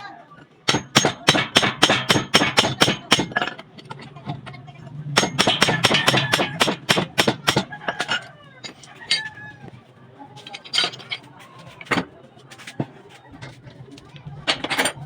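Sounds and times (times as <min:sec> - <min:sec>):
hammer blows on metal: 0:05.2 - 0:08.1.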